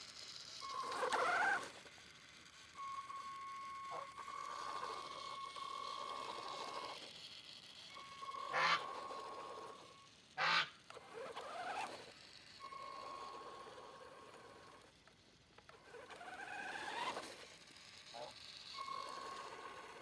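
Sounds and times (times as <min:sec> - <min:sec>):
rc car motor whining: 0:00.0 - 0:20.0.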